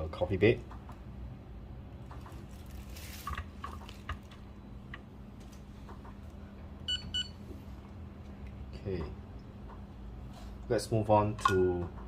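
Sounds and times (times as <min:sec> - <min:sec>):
steady low hum: 0:00.0 - 0:12.0
digital scale beeping: 0:06.9 - 0:07.4.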